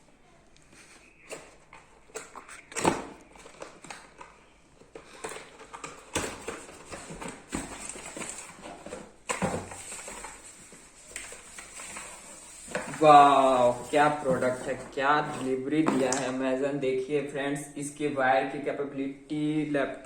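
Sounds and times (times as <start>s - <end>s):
packaging rustling: 0.8s - 16.4s.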